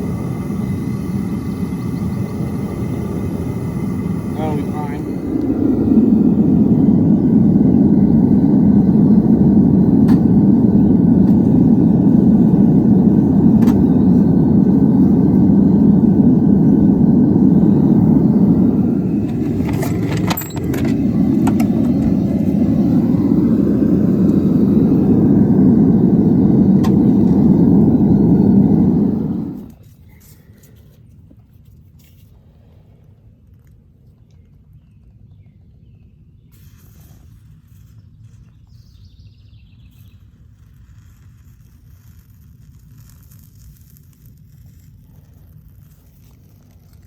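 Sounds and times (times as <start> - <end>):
furnace burner rushing: 0.0 - 30.7.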